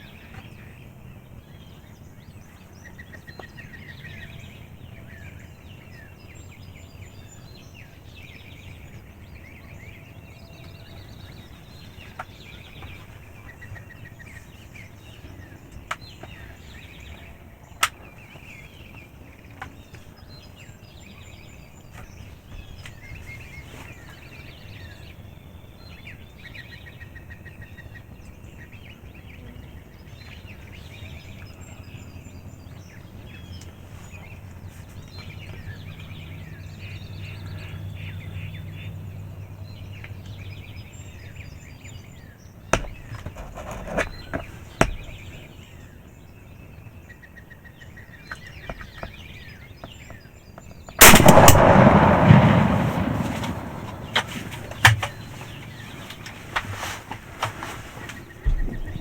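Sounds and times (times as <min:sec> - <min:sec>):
low outdoor hum: 0:00.0 - 0:59.0
songbirds chirping and singing: 0:00.0 - 0:59.0.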